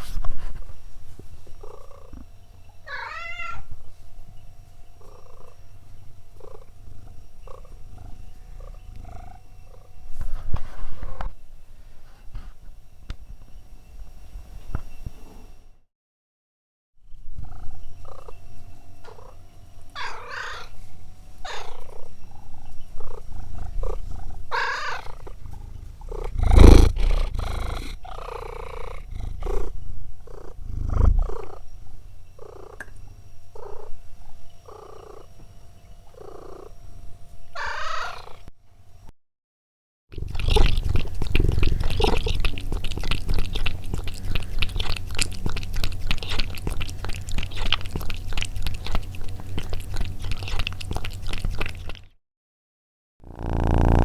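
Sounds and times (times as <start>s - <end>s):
cat purring: 6.4s - 10.0s, 21.5s - 31.6s, 40.2s - 52.1s, 53.2s - 54.0s.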